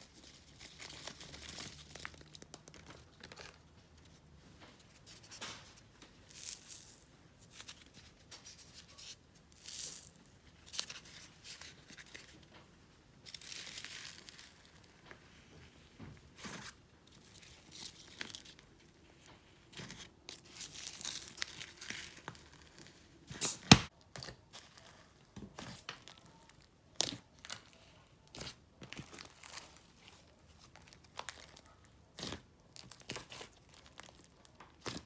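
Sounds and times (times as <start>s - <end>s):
loud slime pop: 23.4s - 23.9s.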